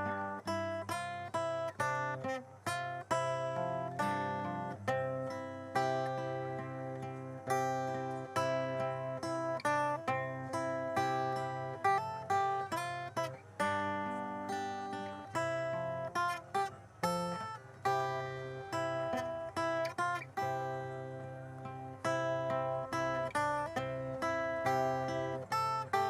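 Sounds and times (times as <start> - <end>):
plucked acoustic guitar music: 0.0 - 26.0.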